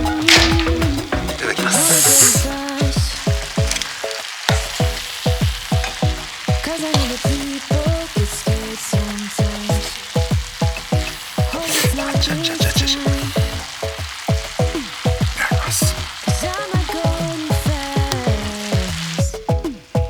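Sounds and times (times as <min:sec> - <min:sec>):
synth melody: 0:00.0 - 0:08.7
food sizzling in a frying pan: 0:00.0 - 0:20.0
deep kick drums: 0:04.5 - 0:20.0.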